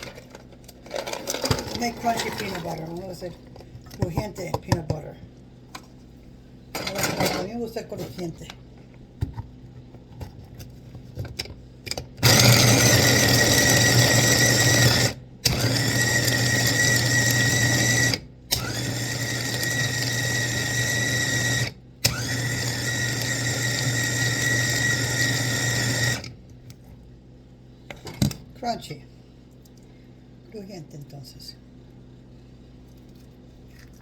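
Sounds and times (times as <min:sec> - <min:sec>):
blender motor grinding: 0:12.2 - 0:26.4.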